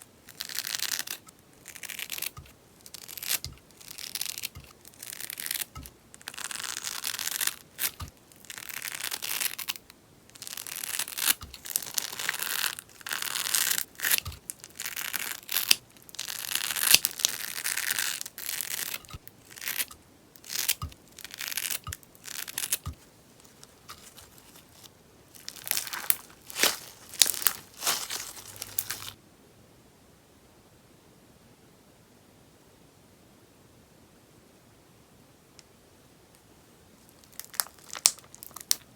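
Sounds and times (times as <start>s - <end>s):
slime crackling and popping: 0.3s - 29.2s, 37.2s - 38.8s.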